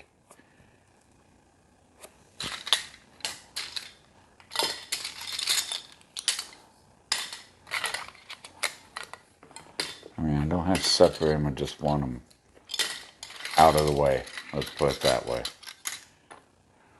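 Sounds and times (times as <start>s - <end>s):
plastic pieces clattering: 2.4s - 10.1s, 12.6s - 16.1s.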